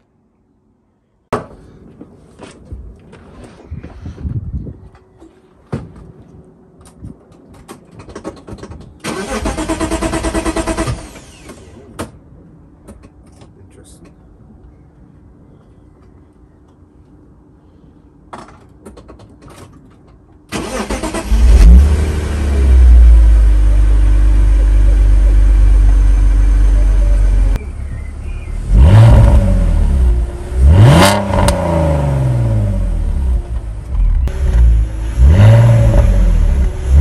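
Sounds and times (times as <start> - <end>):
car engine starting and revving: 9.0 - 11.5, 20.5 - 37.0.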